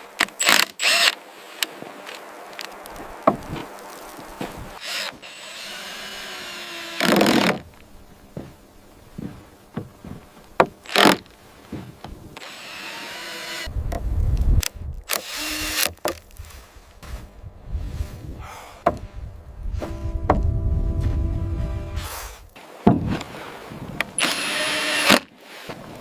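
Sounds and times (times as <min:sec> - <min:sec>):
power tool working wood: 0:04.8 - 0:07.6, 0:12.4 - 0:13.7, 0:24.2 - 0:25.2.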